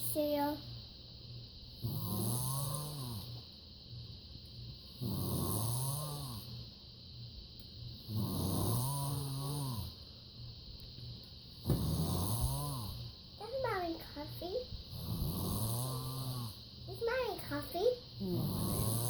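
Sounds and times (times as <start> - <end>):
person snoring: 1.8 - 3.4, 5.0 - 6.5, 8.0 - 10.0, 11.7 - 13.1, 14.9 - 16.6, 18.2 - 19.0.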